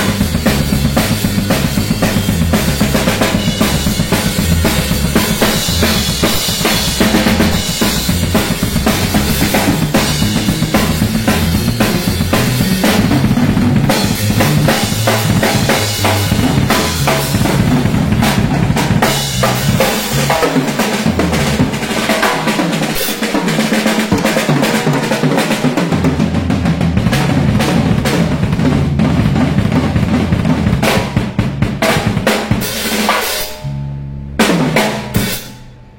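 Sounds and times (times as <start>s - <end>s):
bass line: 0.0s - 35.9s
busy drum kit: 0.0s - 35.9s.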